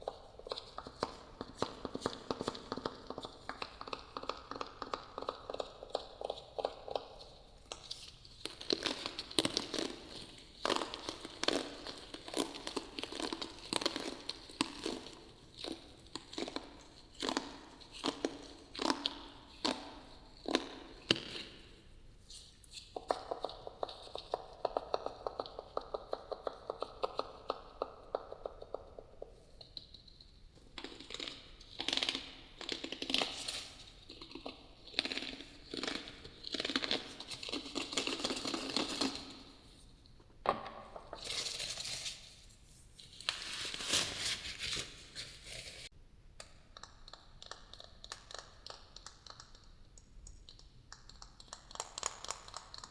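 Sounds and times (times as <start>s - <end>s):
crinkly rustling: 41.2s - 45.9s.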